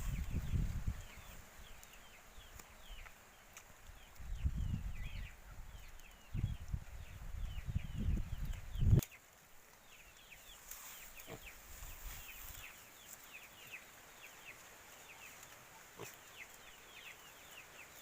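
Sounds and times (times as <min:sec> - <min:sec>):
chicks peeping: 0:00.0 - 0:03.1, 0:03.9 - 0:09.2.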